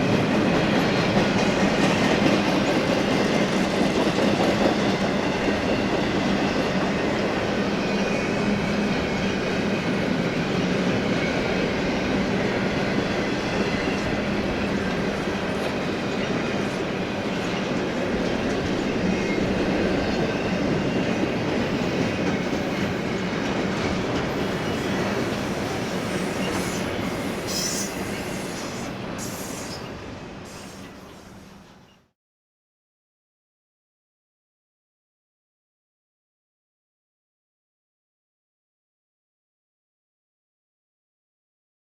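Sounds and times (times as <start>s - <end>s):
freight train rumbling past: 0.0s - 32.0s.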